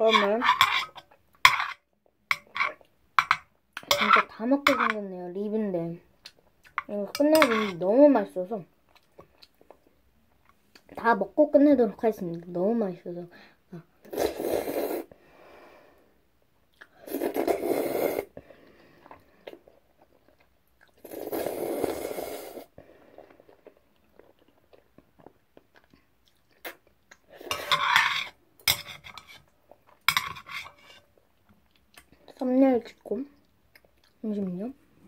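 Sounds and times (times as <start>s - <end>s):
noodle slurping: 17.0s - 18.3s, 21.0s - 22.7s
chewing: 23.2s - 27.4s, 33.4s - 34.2s.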